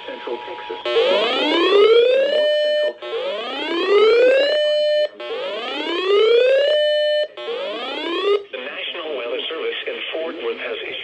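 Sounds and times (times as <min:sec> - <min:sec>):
electronic whoop alarm tone: 0:00.9 - 0:08.4.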